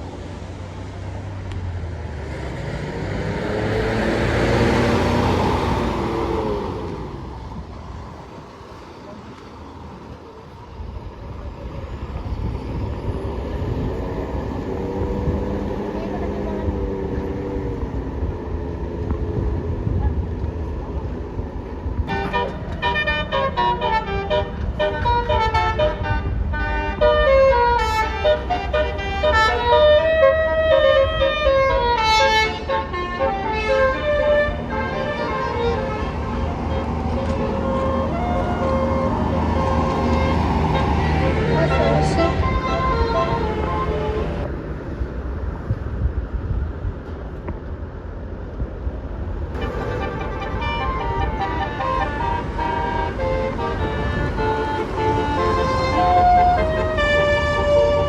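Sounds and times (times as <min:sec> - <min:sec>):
bus engine rumbling: 0:00.0 - 0:58.0
bus horn playing melody: 0:22.1 - 0:44.5, 0:49.6 - 0:58.0.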